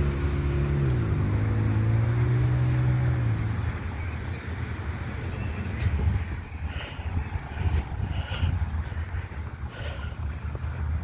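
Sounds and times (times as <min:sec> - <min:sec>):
wind buffeting microphone: 0:05.5 - 0:11.0.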